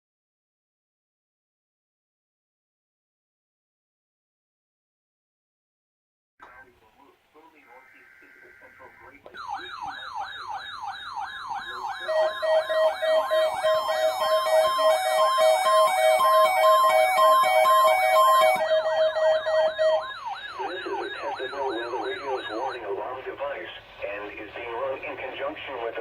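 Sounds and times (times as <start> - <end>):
electronic siren wailing: 7.7 - 23.2
beeping alarm tone: 9.4 - 23.1.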